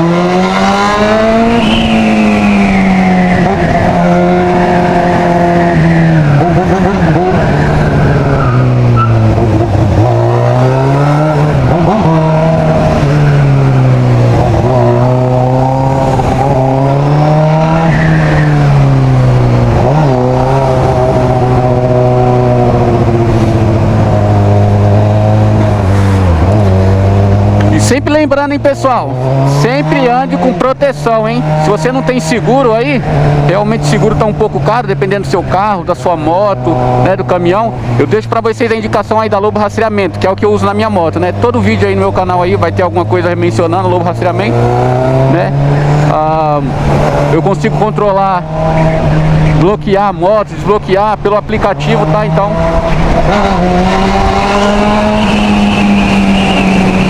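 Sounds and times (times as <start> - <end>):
motorcycle engine accelerating: 0.0 - 57.0.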